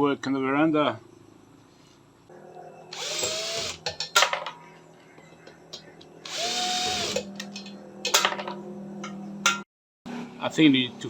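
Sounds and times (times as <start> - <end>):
power drill motor whine: 2.9 - 3.8, 6.2 - 7.3.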